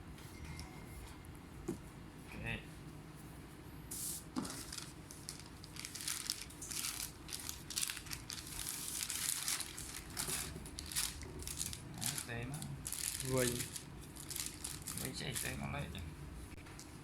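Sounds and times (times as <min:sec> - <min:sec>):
thin plastic crinkling: 0:04.4 - 0:15.7.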